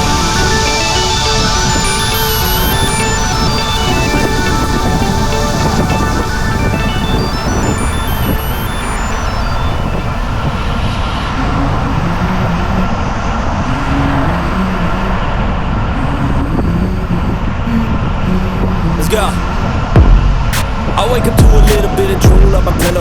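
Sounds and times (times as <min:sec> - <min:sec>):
music with stepped tones: 0:00.0 - 0:09.5, 0:20.0 - 0:23.0
wind and road noise: 0:00.0 - 0:23.0.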